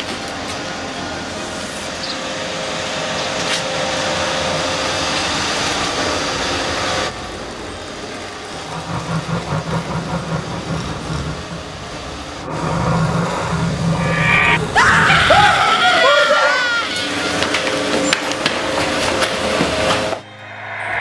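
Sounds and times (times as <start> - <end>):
rumbling noise swell: 5.6 - 15.6, 20.2 - 21.0
low pulsing beats: 7.1 - 15.4, 20.2 - 21.0.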